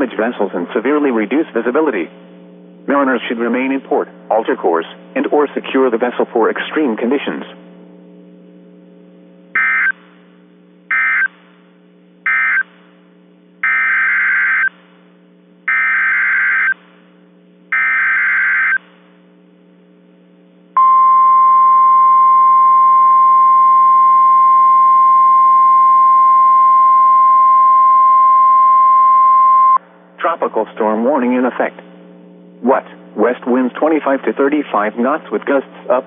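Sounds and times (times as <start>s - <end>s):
faint steady hum: 0.0s - 36.0s
warbling data tone bursts: 9.6s - 10.0s, 10.9s - 11.3s, 12.3s - 12.7s, 13.6s - 14.7s, 15.7s - 16.8s, 17.7s - 18.8s.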